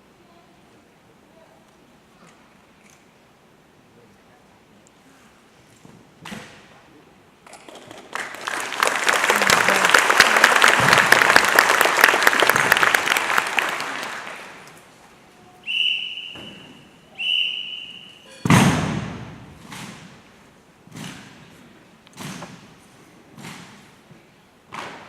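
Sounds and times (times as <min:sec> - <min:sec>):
audience applauding: 0:07.8 - 0:14.9
short high whistle blasts: 0:15.6 - 0:18.5
loud thump: 0:18.4 - 0:20.2.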